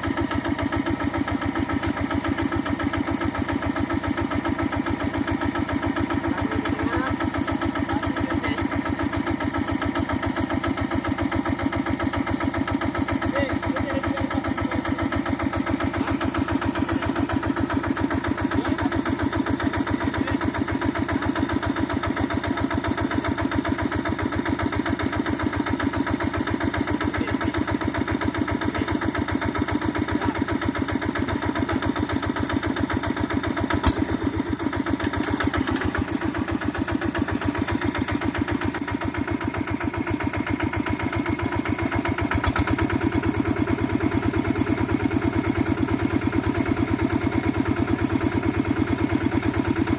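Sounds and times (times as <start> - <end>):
diesel engine chugging: 0.0 - 49.9.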